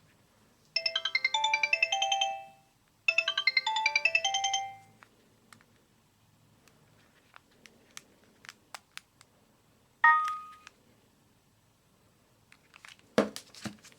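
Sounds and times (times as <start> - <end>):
mobile phone clicks: 10.0 - 10.8.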